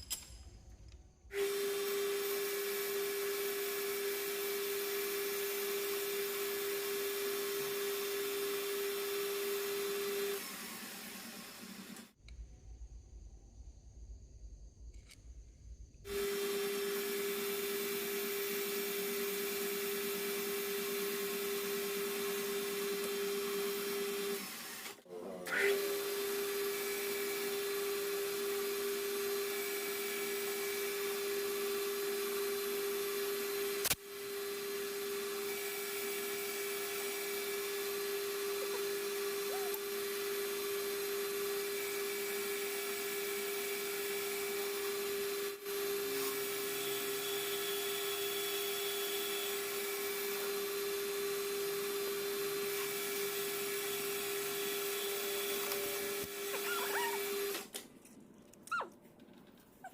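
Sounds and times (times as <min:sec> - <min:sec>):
metal lathe whining: 0:16.1 - 0:57.7.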